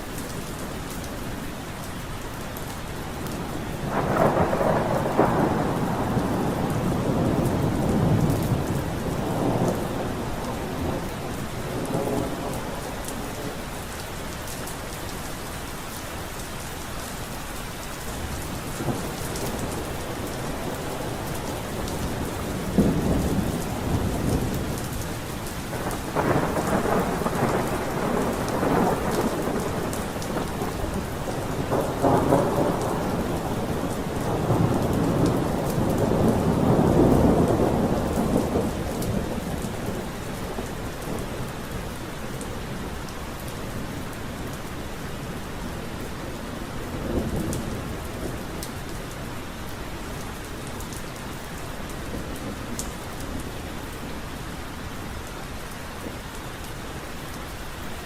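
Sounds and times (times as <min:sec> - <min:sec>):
steady rain falling: 0:00.0 - 0:58.0
rolling thunder: 0:03.8 - 0:13.6, 0:18.7 - 0:41.9.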